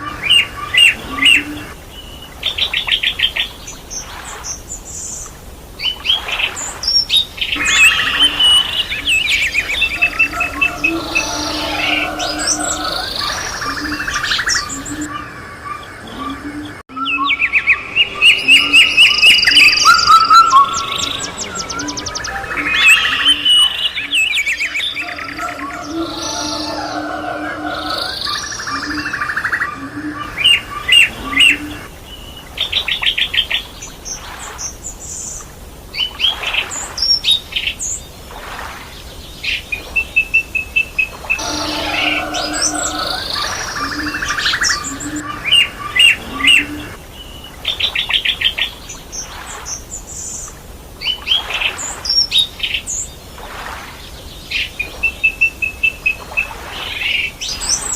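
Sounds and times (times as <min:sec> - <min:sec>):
birds chirping and trilling: 0:00.0 - 0:57.9
low steady bird calling: 0:07.5 - 0:33.5, 0:40.1 - 0:48.4.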